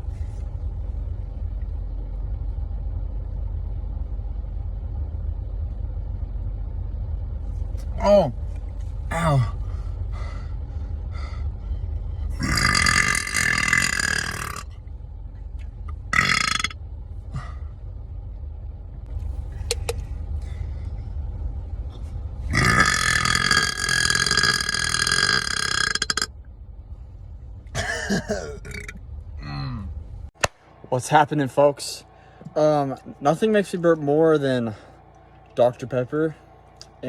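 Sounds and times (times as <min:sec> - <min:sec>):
man burping: 0:09.1 - 0:09.6, 0:12.4 - 0:14.6, 0:16.1 - 0:16.7, 0:22.5 - 0:26.3, 0:27.8 - 0:29.9.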